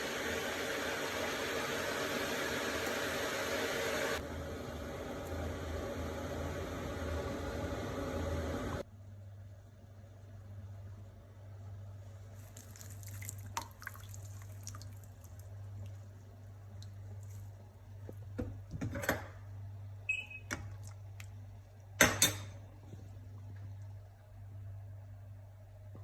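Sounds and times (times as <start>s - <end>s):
liquid dripping: 12.4s - 17.4s.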